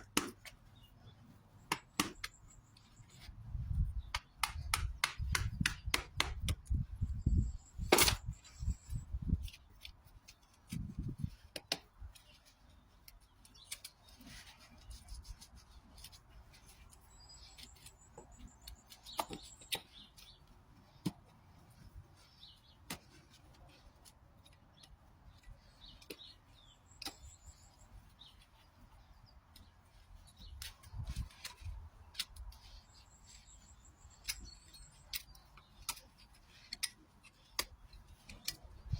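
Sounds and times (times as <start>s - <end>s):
hoof cutting clicks and snips: 0.0s - 6.8s, 7.7s - 38.9s.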